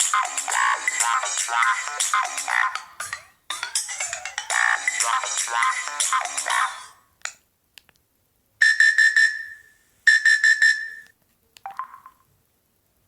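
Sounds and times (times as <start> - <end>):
phone ringtone tune: 0.1 - 6.7, 8.6 - 11.1.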